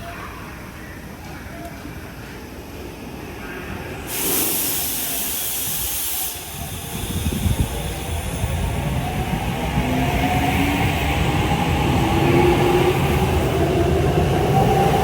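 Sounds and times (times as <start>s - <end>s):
compressed air hiss: 4.1s - 8.0s.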